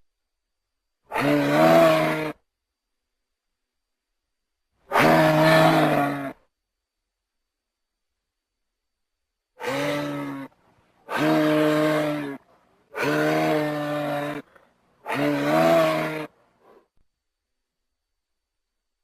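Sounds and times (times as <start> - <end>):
low dinosaur calls: 1.1 - 2.4, 4.9 - 6.4, 9.6 - 16.8.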